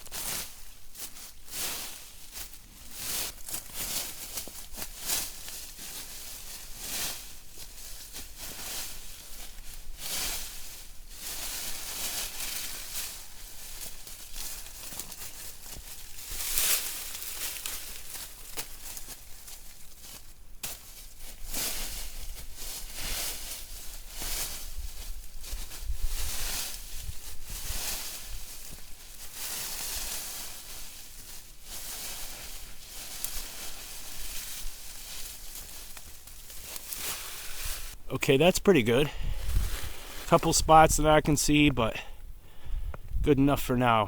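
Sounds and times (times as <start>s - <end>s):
dry leaves rustling and crackling: 0.0s - 38.0s, 39.3s - 40.3s.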